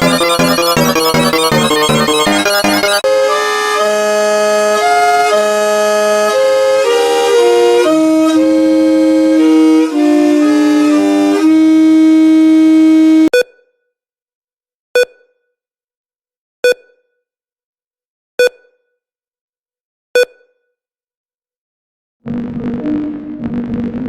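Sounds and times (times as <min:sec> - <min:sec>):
electronic alarm tones: 0:00.0 - 0:03.1.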